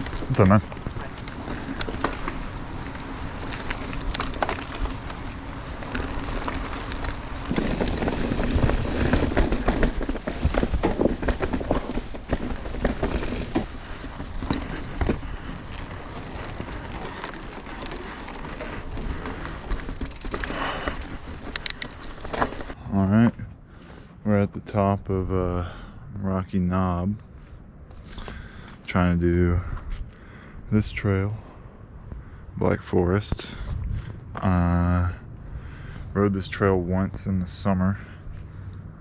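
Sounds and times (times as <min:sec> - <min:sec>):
bike clattering and knocking: 0:00.0 - 0:22.8
bike tyres rolling over rocks: 0:00.0 - 0:22.8
wind noise: 0:00.0 - 0:22.8, 0:29.5 - 0:34.5.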